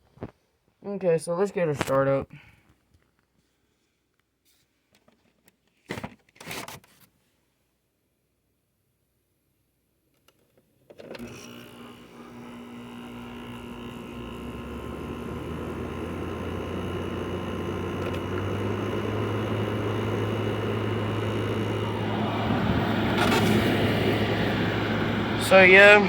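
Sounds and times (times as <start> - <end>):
air conditioner humming: 11.8 - 26.0
deeper hum: 12.2 - 26.0.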